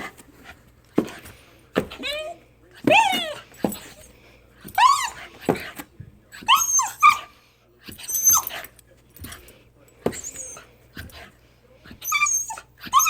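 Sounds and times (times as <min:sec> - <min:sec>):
dog whining yips: 0:04.8 - 0:05.3, 0:06.4 - 0:07.3, 0:07.9 - 0:08.7, 0:10.1 - 0:10.7, 0:12.0 - 0:13.0.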